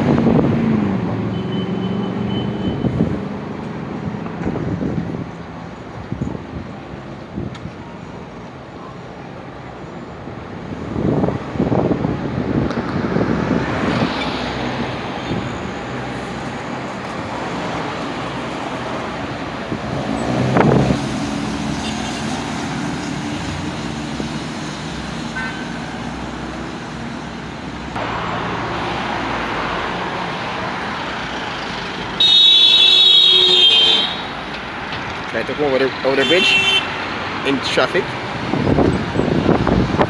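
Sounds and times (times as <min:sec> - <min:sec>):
road traffic passing: 0:00.0 - 0:40.0
vehicle passing close: 0:11.0 - 0:32.2.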